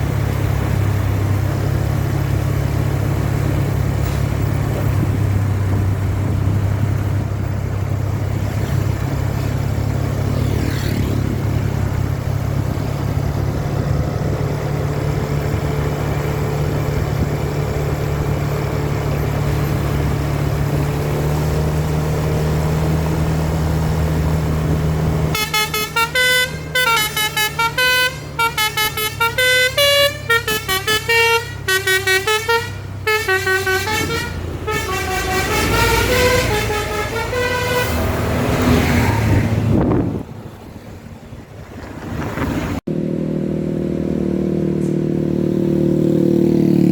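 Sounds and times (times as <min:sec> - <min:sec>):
bus engine droning: 0:00.0 - 0:46.9
multi-tone bus horn melody: 0:25.2 - 0:39.4.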